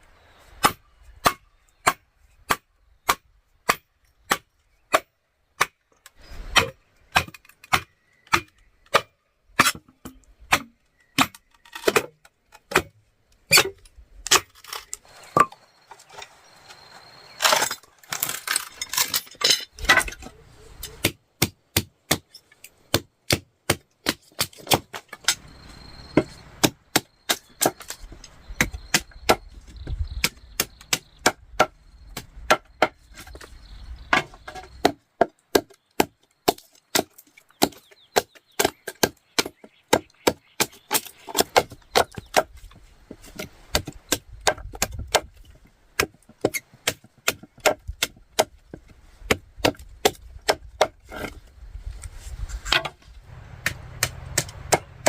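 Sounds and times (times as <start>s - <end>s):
tool striking wood: 53.6s - 55.0s.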